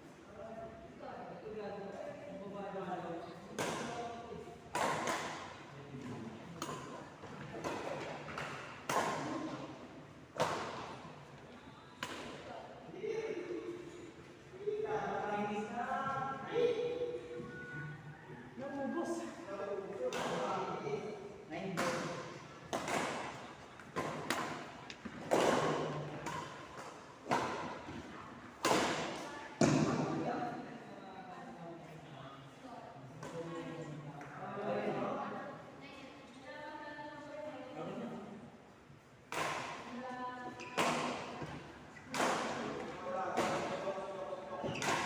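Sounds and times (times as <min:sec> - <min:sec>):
ball strikes echoing in a hall: 0:02.7 - 0:17.6, 0:18.5 - 0:30.6, 0:33.0 - 0:35.4, 0:39.1 - 0:45.0.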